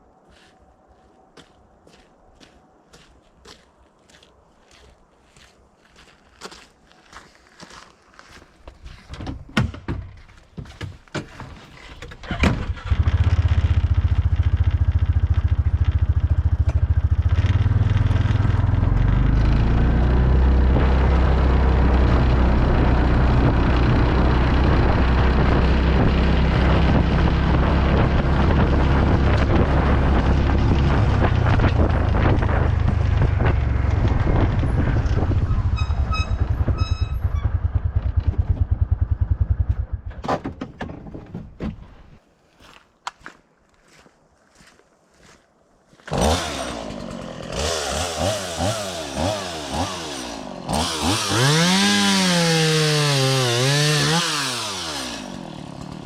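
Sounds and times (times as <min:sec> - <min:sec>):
vehicle engine running: 0:12.8 - 0:40.1.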